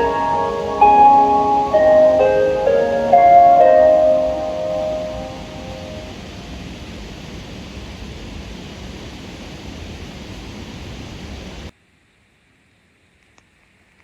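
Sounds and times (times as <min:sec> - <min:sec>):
loudspeaker hiss: 0:00.0 - 0:06.9.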